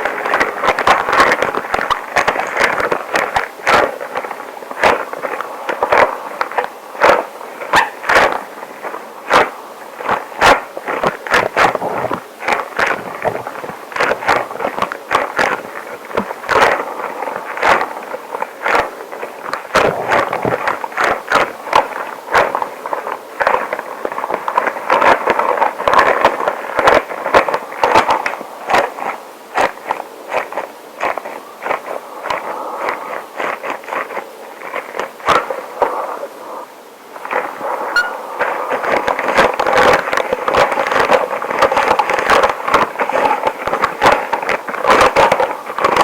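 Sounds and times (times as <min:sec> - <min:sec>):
rubber gloves squeaking: 0:38.0 - 0:38.4.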